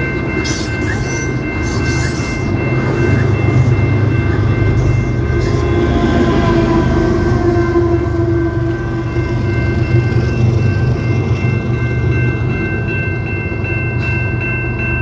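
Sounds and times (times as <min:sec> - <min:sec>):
high steady ringing tone: 0:00.0 - 0:15.0
train rumbling past: 0:00.0 - 0:15.0
train horn: 0:05.4 - 0:09.2.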